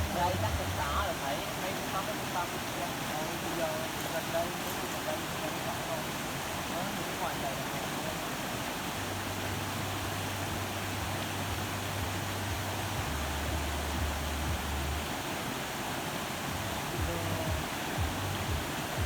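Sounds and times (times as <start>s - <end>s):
steady rushing noise: 0.0s - 19.0s
low hum: 9.2s - 15.1s.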